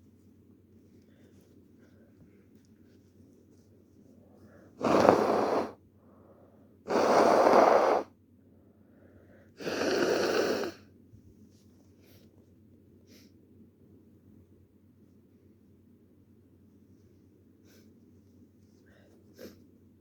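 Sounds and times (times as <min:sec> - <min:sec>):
person blowing nose: 0:04.8 - 0:05.8, 0:06.9 - 0:08.1, 0:09.6 - 0:10.8.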